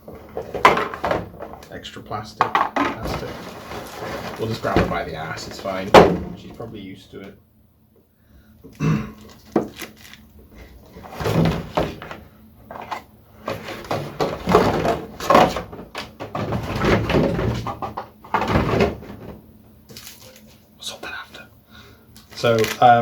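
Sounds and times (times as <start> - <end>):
plastic packaging crinkling: 9.2 - 10.4, 19.9 - 20.6, 22.2 - 23.0.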